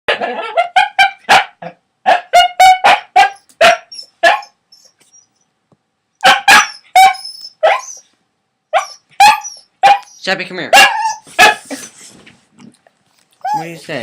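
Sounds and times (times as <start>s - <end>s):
dog barking: 0.1s - 4.6s, 6.2s - 8.0s, 8.7s - 11.8s.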